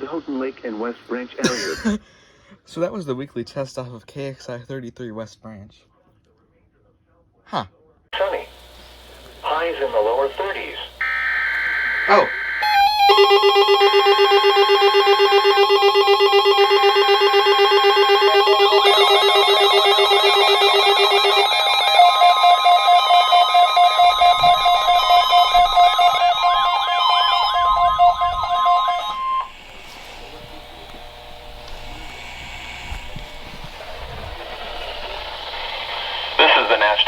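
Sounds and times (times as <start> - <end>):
faint radio hiss: 0.0 - 2.8, 8.2 - 13.1, 17.7 - 37.0
pulsing alarm beeps and warbling tones: 11.0 - 36.9
steady alert tone: 11.8 - 32.8.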